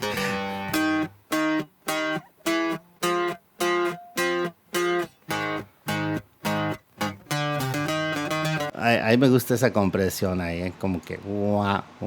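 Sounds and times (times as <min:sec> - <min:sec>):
bass line: 0:00.0 - 0:01.1
strummed guitar chords: 0:00.0 - 0:08.8.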